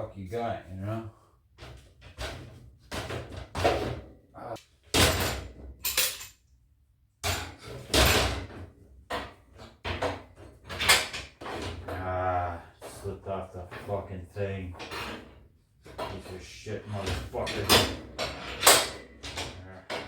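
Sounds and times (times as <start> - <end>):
steel parts knocking and clanking: 17.0 - 20.0.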